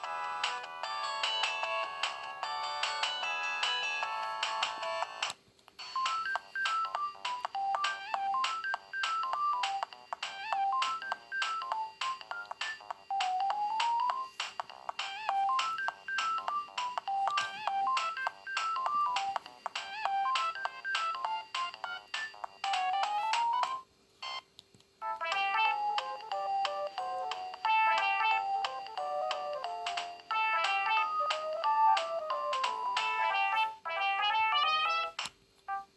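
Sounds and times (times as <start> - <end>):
mobile phone ringtone: 0.0 - 5.1, 5.8 - 9.8
different ringtone: 0.0 - 35.9.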